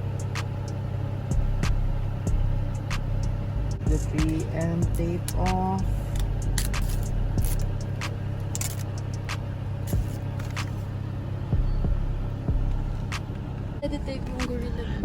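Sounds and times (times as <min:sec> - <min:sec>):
car engine idling: 0:00.0 - 0:15.0
trim piece clicking and scraping: 0:05.2 - 0:07.8.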